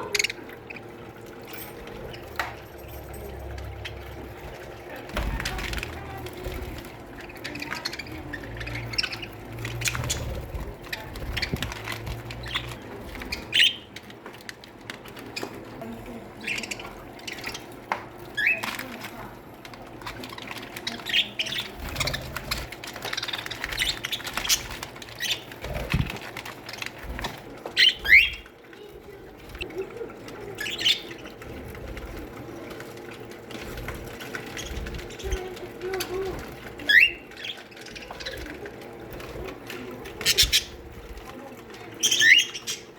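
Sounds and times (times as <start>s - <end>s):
budgerigars chirping: 7.3s - 14.0s, 27.8s - 28.5s, 40.2s - 40.9s, 42.0s - 42.9s.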